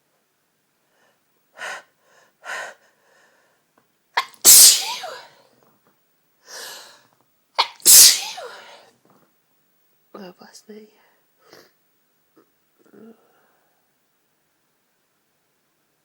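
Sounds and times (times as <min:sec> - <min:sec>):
person sneezing: 0:04.2 - 0:05.4, 0:07.6 - 0:08.8.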